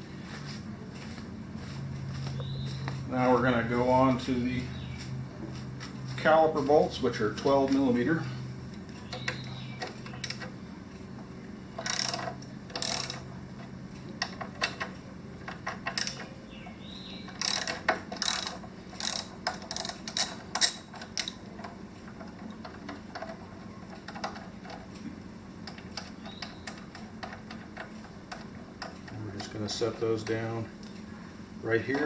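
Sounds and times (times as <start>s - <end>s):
socket ratchet clicking: 11.8s - 13.3s, 17.3s - 21.4s.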